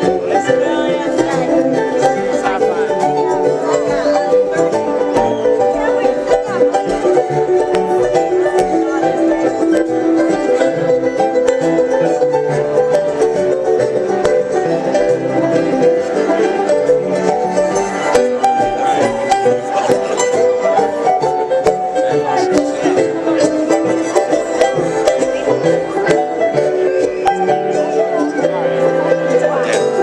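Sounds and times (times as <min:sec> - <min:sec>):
bluegrass band playing: 0:00.0 - 0:30.0
fast banjo picking: 0:00.0 - 0:30.0.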